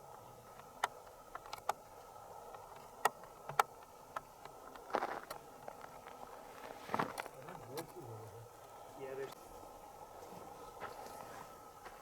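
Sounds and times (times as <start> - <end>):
footsteps on crunchy dry ground: 4.8 - 7.3.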